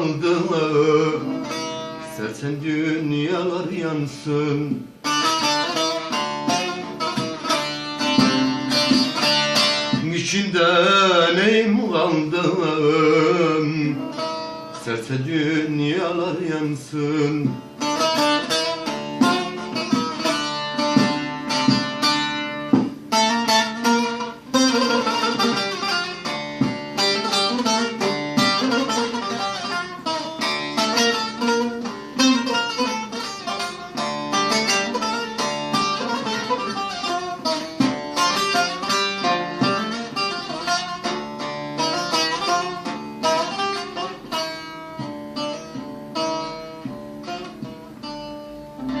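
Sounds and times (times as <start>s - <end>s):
plucked string instrument melody: 0.0s - 49.0s.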